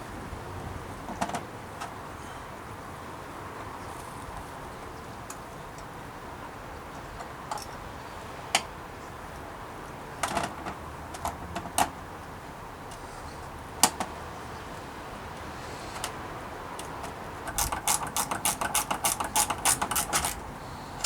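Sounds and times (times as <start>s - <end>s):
metal parts and tools clicking: 16.8s - 20.4s.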